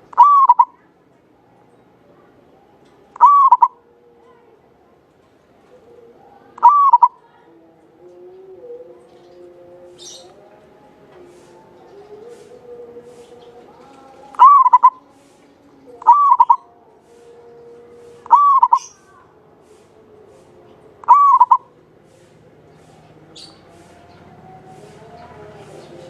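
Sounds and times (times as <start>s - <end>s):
dove cooing: 0.0s - 0.9s, 3.2s - 4.2s, 5.7s - 10.4s, 11.2s - 15.3s, 16.0s - 26.0s.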